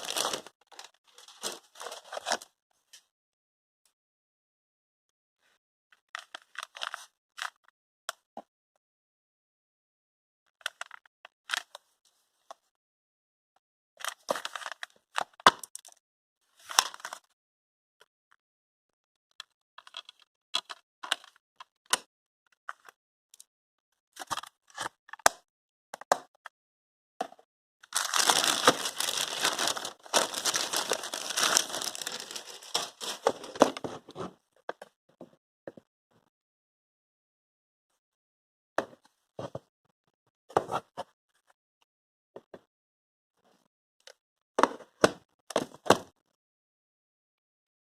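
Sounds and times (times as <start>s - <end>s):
packaging crinkling and clicking: 0.0s - 2.4s, 27.9s - 33.9s.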